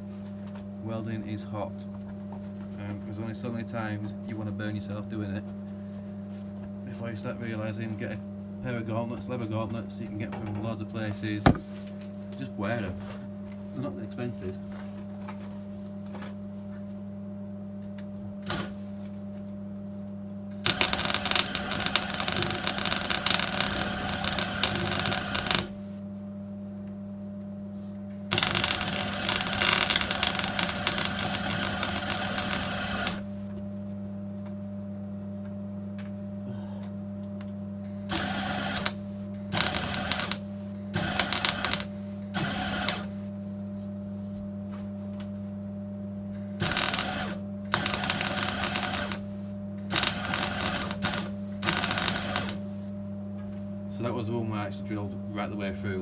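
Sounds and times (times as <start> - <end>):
steady low hum: 0.0 - 56.0
welder crackling: 11.4 - 11.8, 18.4 - 18.9, 20.6 - 26.0, 28.3 - 33.5, 38.1 - 44.4, 46.6 - 52.9.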